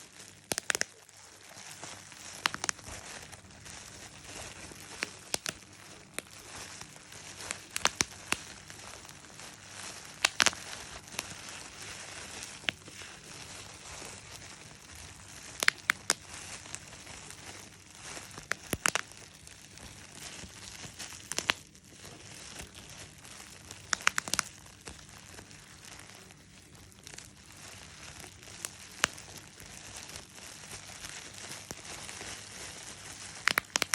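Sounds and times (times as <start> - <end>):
bubble wrap popping: 0.0 - 33.9
plastic sheet crinkling: 0.0 - 33.9.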